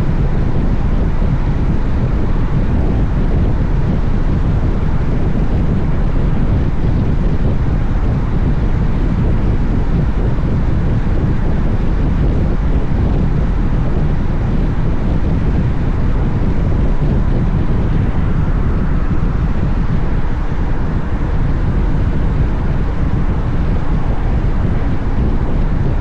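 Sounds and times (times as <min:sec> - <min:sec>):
wind rushing over microphone: 0:00.0 - 0:26.0
road noise: 0:13.5 - 0:26.0.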